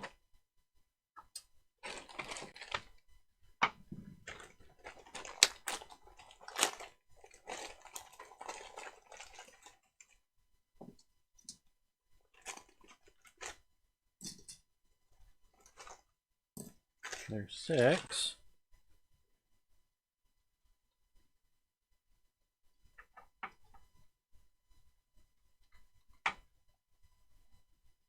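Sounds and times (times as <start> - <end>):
crinkly rustling: 1.8 - 3.0, 3.9 - 10.2, 12.2 - 13.6, 15.5 - 16.1, 17.0 - 18.2.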